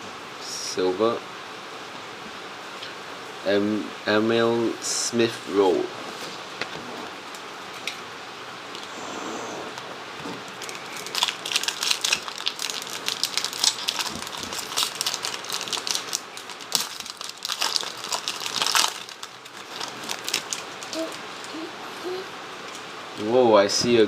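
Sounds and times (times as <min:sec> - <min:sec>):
foil wrapper crinkling: 0:10.5 - 0:21.2.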